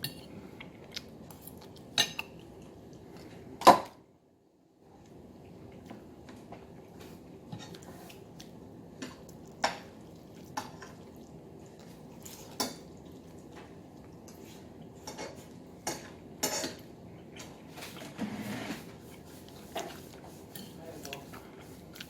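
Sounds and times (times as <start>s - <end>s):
low room hum: 0.0s - 22.0s
dishes and cutlery clinking: 14.3s - 16.9s.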